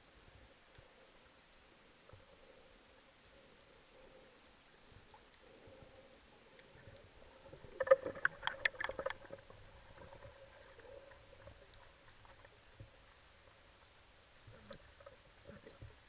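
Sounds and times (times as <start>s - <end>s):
faint steady hum: 0.0s - 16.0s
sharp clicks and knocks underwater: 6.5s - 13.0s.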